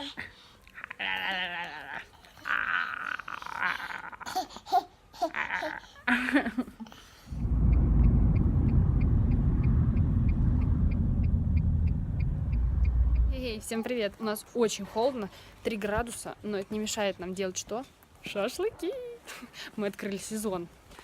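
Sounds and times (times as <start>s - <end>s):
small child babbling and laughing: 1.0s - 6.1s
steady low rumble: 7.3s - 13.9s
light regular ticking: 7.4s - 13.7s.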